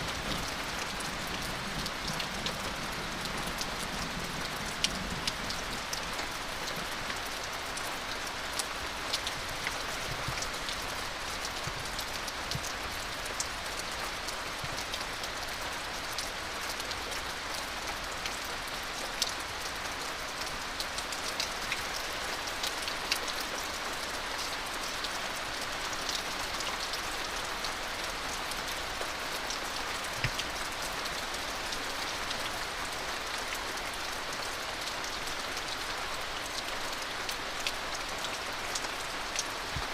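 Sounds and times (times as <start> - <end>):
raindrops ticking close by: 0.0 - 39.9
steady rain hiss: 0.0 - 39.9.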